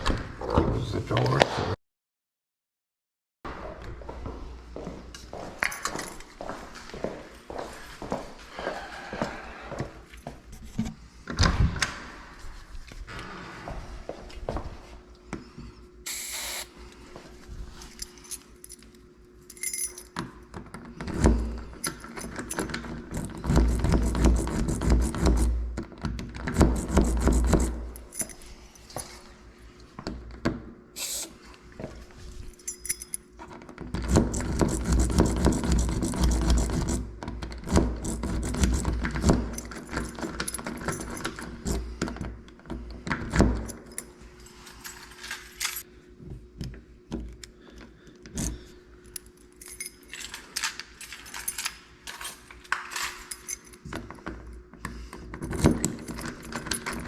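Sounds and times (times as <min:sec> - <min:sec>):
keys jangling in door lock: 0:05.6 - 0:06.3, 0:17.9 - 0:20.2, 0:21.8 - 0:24.8, 0:26.8 - 0:29.0, 0:32.6 - 0:33.3, 0:37.6 - 0:41.9, 0:43.2 - 0:45.8, 0:48.3 - 0:54.1, 0:55.4 - 0:57.0.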